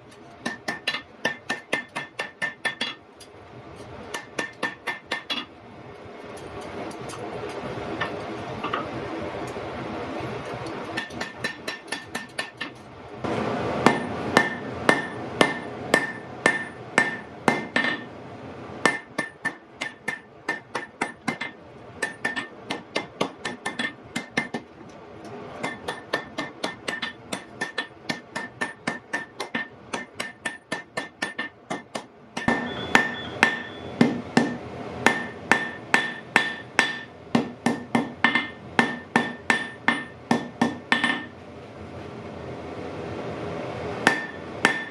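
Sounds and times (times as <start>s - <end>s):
hammer striking iron on anvil: 0.4s - 3.0s, 4.1s - 5.5s, 10.9s - 12.8s, 13.8s - 18.1s, 18.8s - 24.7s, 25.6s - 41.3s, 44.0s - 44.9s
steady rushing noise: 13.1s - 19.0s.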